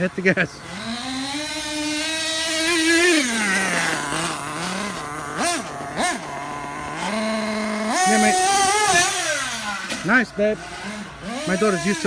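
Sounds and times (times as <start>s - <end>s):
engine throttle blips: 0.0s - 12.0s
nitro engine revving: 0.0s - 12.0s.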